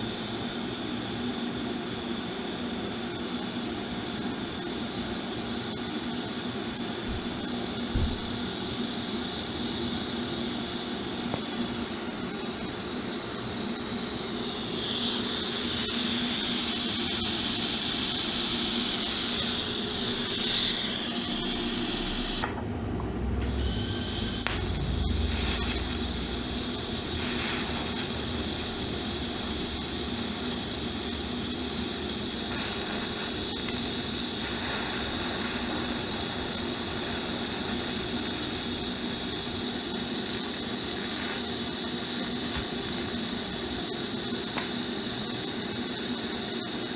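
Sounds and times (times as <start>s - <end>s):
welding arc hiss and buzz: 0.0s - 22.7s, 23.3s - 46.9s
brief low rumble: 21.9s - 29.2s.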